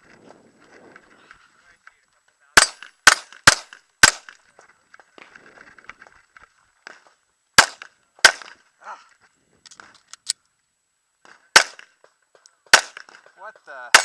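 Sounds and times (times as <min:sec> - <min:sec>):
handgun shots: 0:02.6 - 0:04.4, 0:11.5 - 0:12.0, 0:12.7 - 0:13.2.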